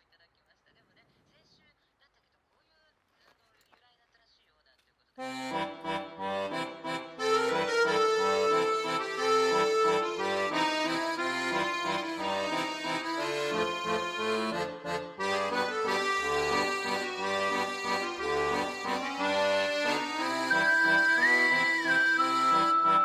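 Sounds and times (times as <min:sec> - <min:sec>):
instrumental music with bass line: 0:05.3 - 0:23.0.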